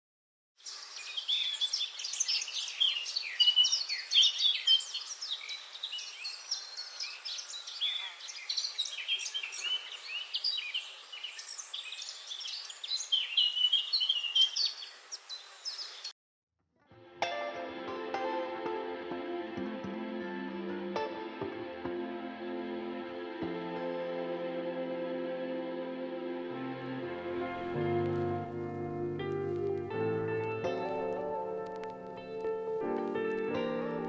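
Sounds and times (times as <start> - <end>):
birds chirping and singing: 0.6 - 16.1.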